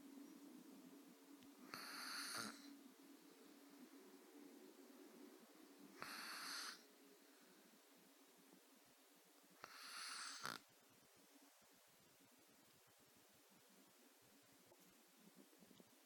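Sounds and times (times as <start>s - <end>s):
cat snoring: 1.6s - 2.7s, 5.9s - 6.9s, 9.6s - 10.7s.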